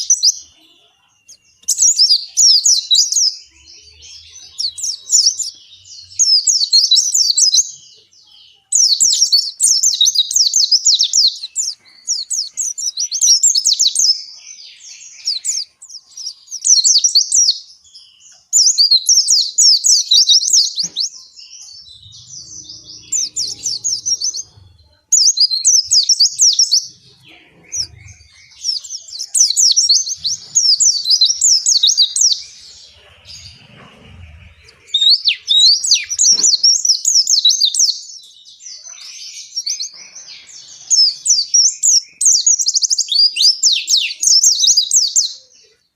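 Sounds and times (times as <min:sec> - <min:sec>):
bird warbling song: 0:00.0 - 0:45.9.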